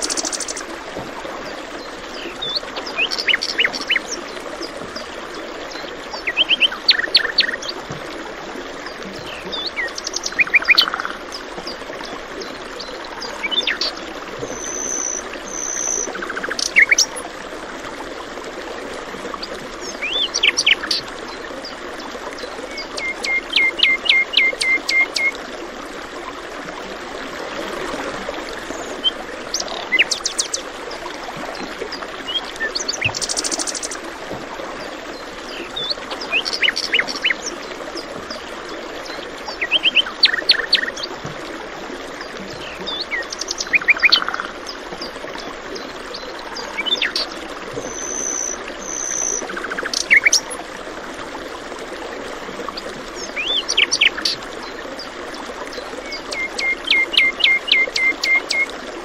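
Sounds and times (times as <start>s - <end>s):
running water: 0.0s - 59.0s
birds singing and chirping: 2.2s - 4.2s.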